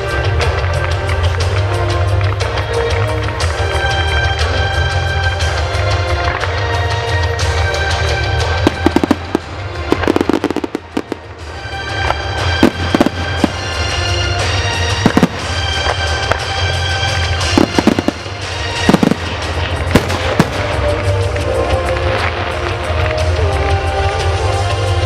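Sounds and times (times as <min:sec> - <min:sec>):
fireworks bangs and crackles: 0:00.0 - 0:25.0
loud music: 0:00.0 - 0:25.0.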